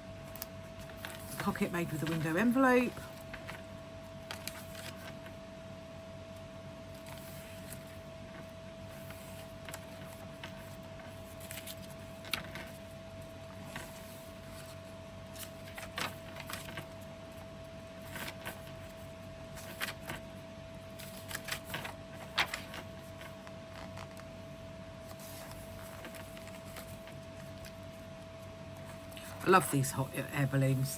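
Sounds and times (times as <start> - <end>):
faint steady hum: 0.0 - 30.9
paper pages rustling: 0.3 - 5.4, 6.9 - 24.4, 25.0 - 29.9.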